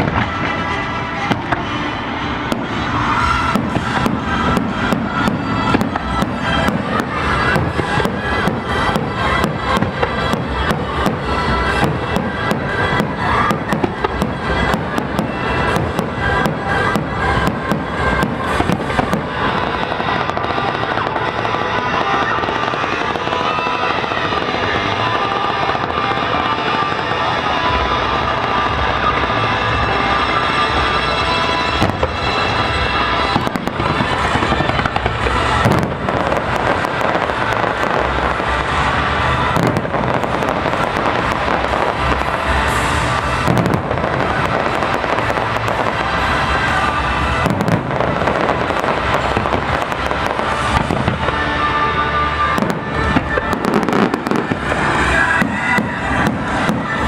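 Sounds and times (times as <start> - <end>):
fireworks bangs and crackling: 0.0 - 57.0.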